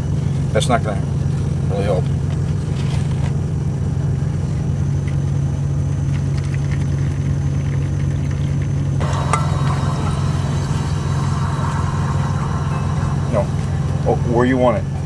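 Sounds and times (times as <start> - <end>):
diesel truck engine idling: 8.6 - 15.0.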